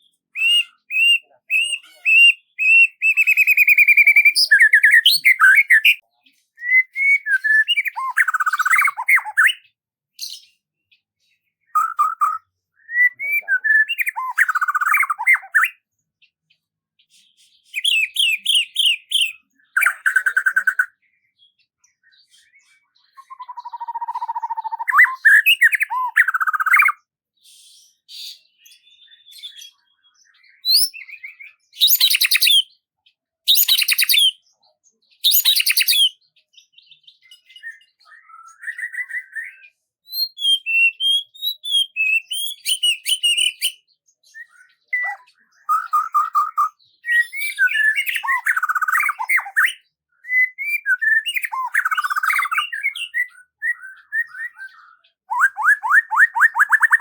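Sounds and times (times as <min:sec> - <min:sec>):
harsh bird calls: 0:00.0 - 0:10.4, 0:11.7 - 0:15.8, 0:22.2 - 0:27.0, 0:30.4 - 0:32.8, 0:35.2 - 0:36.2, 0:37.3 - 0:57.0
songbirds singing: 0:00.0 - 0:57.0.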